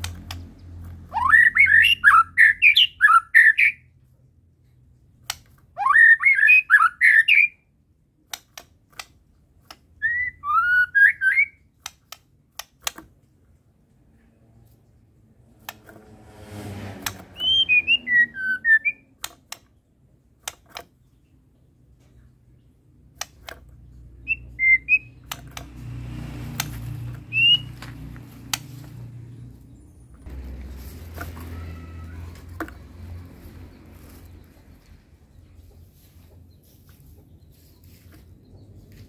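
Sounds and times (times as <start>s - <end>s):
sharp clicks: 0.0s - 1.0s, 8.2s - 10.0s, 11.6s - 13.4s, 15.5s - 16.0s, 18.8s - 19.8s, 20.4s - 21.1s, 23.0s - 35.0s
bird singing whistled phrases: 1.2s - 3.8s, 5.8s - 7.6s, 10.0s - 11.6s, 17.4s - 19.0s, 24.2s - 25.2s, 27.3s - 27.8s.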